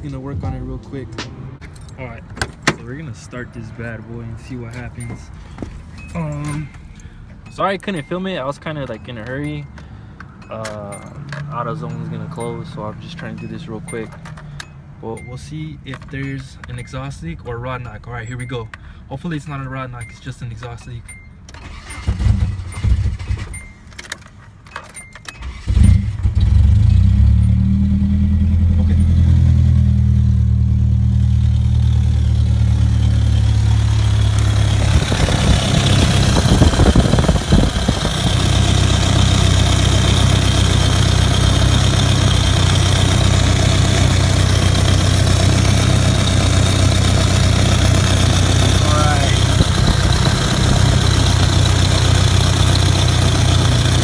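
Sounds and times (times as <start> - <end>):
car engine starting and idling: 0.0 - 54.0
keys rattling in ignition: 1.6 - 54.0
engine revving: 21.6 - 23.8, 25.4 - 54.0.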